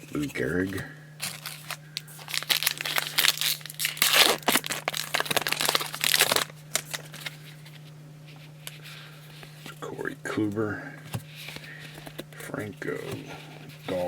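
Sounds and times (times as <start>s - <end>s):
card pack wrapper crinkling: 0.5s - 7.6s.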